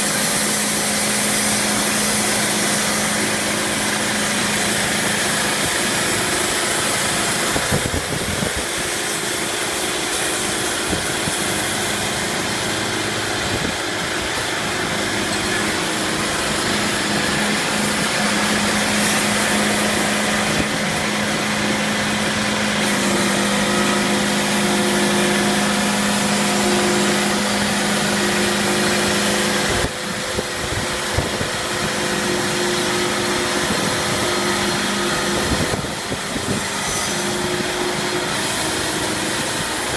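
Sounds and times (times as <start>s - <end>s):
engine-like hum: 0.0s - 39.9s
sawmill mechanical noise: 0.0s - 39.9s.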